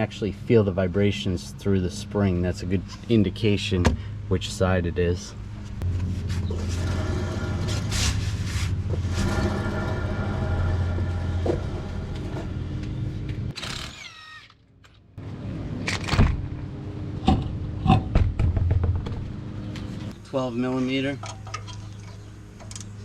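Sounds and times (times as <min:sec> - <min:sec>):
wheel bearing humming: 0:05.3 - 0:14.3.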